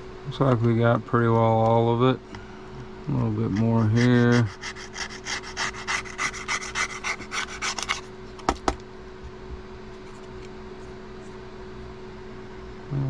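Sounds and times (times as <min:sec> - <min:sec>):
low electrical hum: 0:00.0 - 0:13.0
scraping adhesive: 0:03.5 - 0:08.1.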